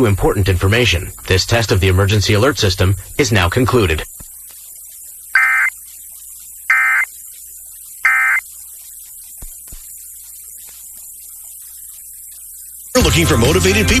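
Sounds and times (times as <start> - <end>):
digital data tone bursts: 5.3 - 6.0, 6.6 - 7.3, 7.9 - 8.6.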